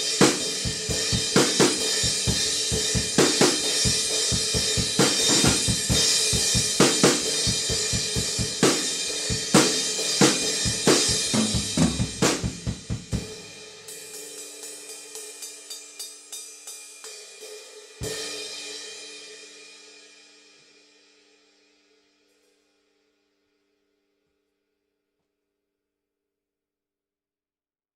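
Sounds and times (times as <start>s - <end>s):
drum kit playing: 0.0s - 18.7s.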